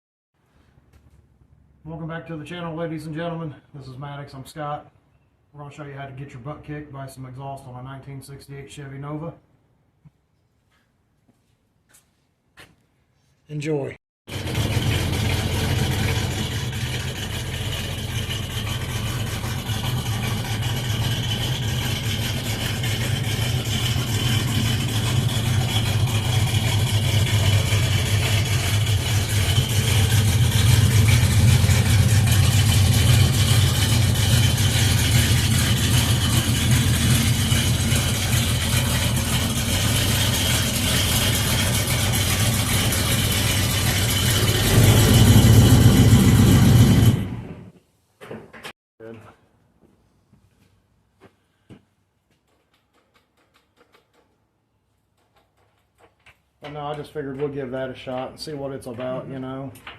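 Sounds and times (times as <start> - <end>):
car engine idling: 14.3 - 47.5.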